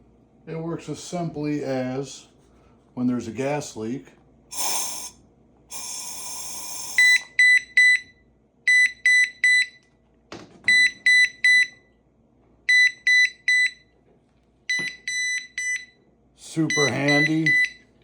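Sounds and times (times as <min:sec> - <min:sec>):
gas hissing: 0:04.5 - 0:07.3
gas detector alarm beeping: 0:06.8 - 0:09.8, 0:10.7 - 0:11.8, 0:12.7 - 0:13.9, 0:14.7 - 0:16.0, 0:16.6 - 0:17.9.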